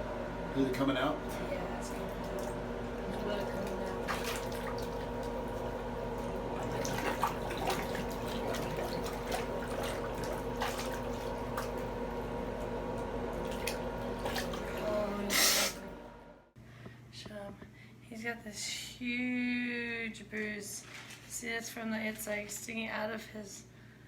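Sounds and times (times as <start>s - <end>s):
water splashing: 1.8s - 12.2s, 13.3s - 15.8s.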